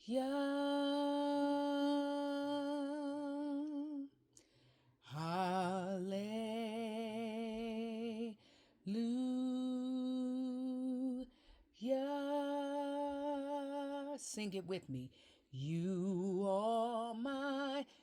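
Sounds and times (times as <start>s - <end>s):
person singing slow melody: 0.0s - 4.2s.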